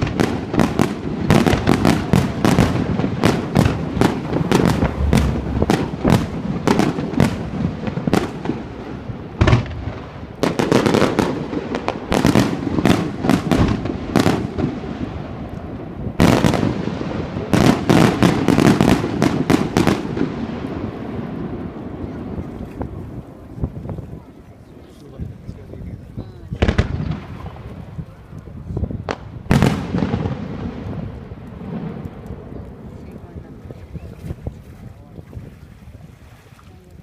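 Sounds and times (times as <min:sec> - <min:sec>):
fireworks bangs and crackles: 0:00.0 - 0:35.1.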